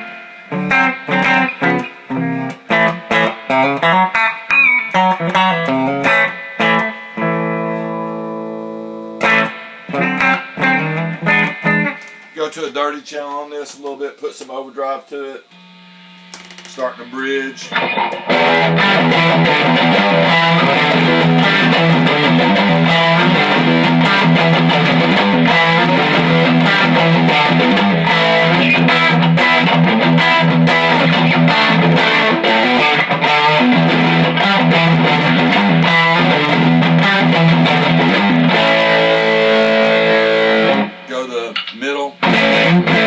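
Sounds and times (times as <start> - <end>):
overdriven electric guitar strumming: 0.0 - 12.4, 15.6 - 43.0.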